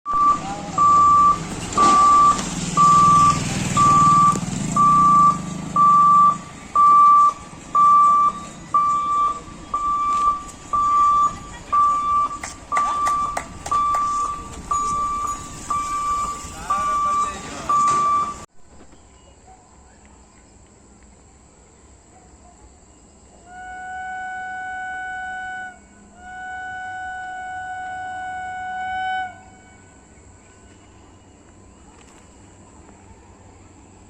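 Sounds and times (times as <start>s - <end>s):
electronic warning beeps: 0.1s - 18.5s
low engine hum: 0.1s - 18.5s.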